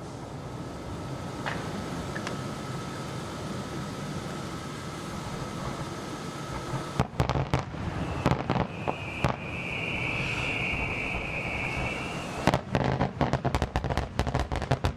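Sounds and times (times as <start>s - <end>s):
firework whistle: 7.0s - 13.4s
firework cracks: 7.0s - 14.9s.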